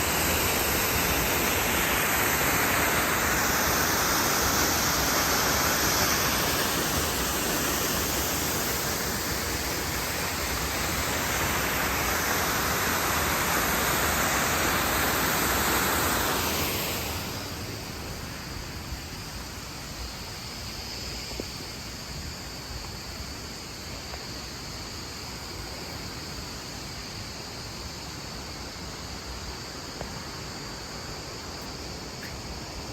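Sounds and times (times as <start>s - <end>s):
waterfall rushing: 0.0s - 17.8s.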